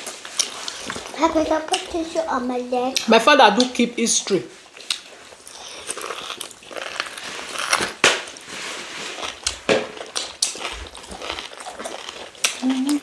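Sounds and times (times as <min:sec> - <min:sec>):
wet chewing: 0:00.0 - 0:03.9, 0:04.5 - 0:13.0
crackles and sharp clicks: 0:09.3 - 0:13.0.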